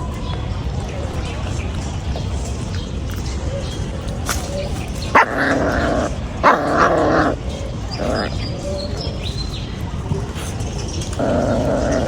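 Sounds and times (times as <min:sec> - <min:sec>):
puppy barking: 0:05.1 - 0:07.4.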